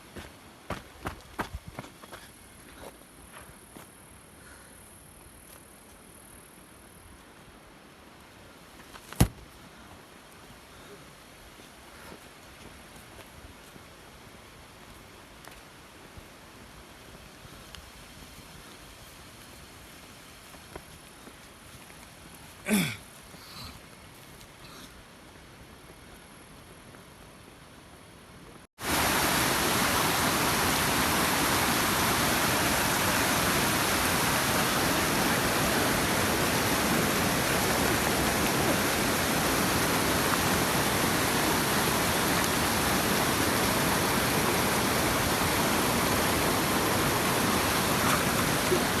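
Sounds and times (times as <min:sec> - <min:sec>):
fast-flowing stream rushing: 0:28.8 - 0:49.0.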